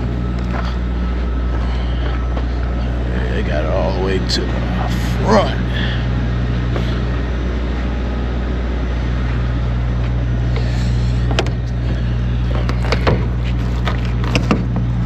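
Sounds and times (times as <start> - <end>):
diesel engine idling: 0.0 - 15.0
sharp clicks and knocks: 12.5 - 14.9.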